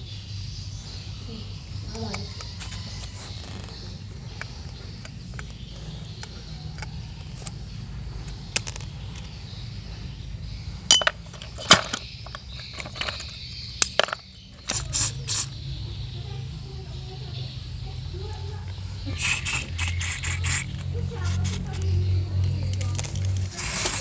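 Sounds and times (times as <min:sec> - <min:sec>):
steady low hum: 0:00.0 - 0:24.0
hard objects clicking and tapping: 0:02.0 - 0:09.4, 0:10.8 - 0:15.5.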